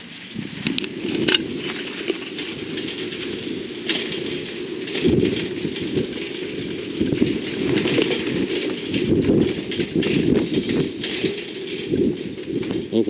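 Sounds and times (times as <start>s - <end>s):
crackling hiss: 0.0s - 13.0s
gusty wind buffeting microphone: 0.0s - 13.0s.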